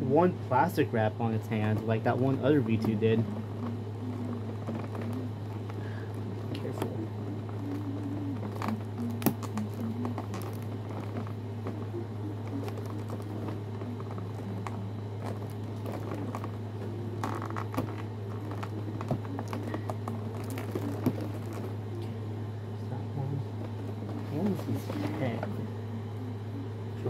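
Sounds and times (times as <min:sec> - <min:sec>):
steady low hum: 0:00.0 - 0:27.0
packaging rustle: 0:01.6 - 0:21.8.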